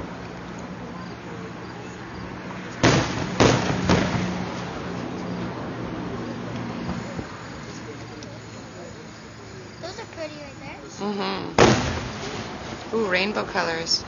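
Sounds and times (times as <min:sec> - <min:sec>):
fireworks bursting with echo: 0:02.8 - 0:06.0, 0:11.6 - 0:14.0.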